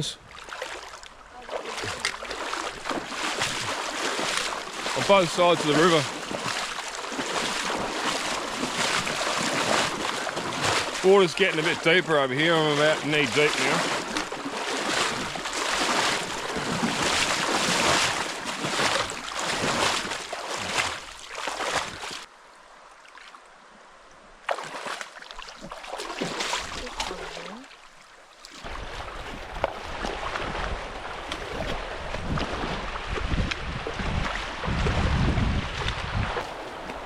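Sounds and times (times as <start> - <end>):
water rushing: 0.0 - 23.5, 24.4 - 37.0
wading through river water: 0.0 - 37.0
wind rumbling on microphone: 28.6 - 37.0.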